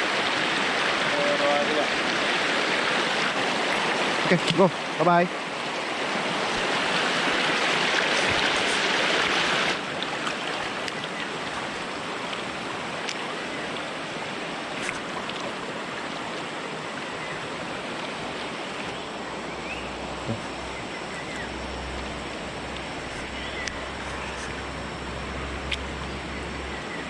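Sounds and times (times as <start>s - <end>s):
stream rushing over rocks: 0.0s - 20.8s.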